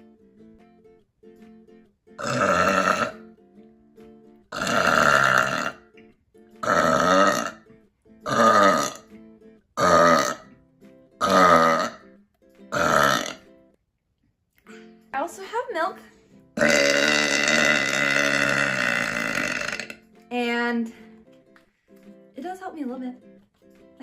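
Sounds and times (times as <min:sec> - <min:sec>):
quiet background music: 0:00.0 - 0:24.0
person burping loudly: 0:02.2 - 0:03.3, 0:04.5 - 0:06.0, 0:06.6 - 0:09.1, 0:09.8 - 0:10.6, 0:11.2 - 0:12.1, 0:12.7 - 0:13.5, 0:16.6 - 0:20.0.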